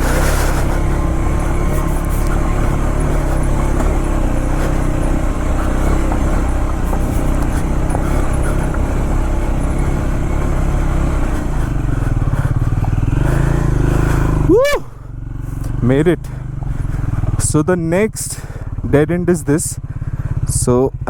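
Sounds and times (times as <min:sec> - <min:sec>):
motorcycle engine climbing: 0:00.0 - 0:21.0.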